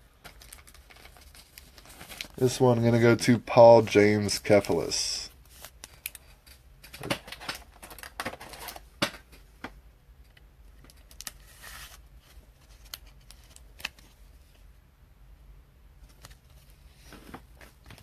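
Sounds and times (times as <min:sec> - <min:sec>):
soft rustle: 0:11.2 - 0:14.8.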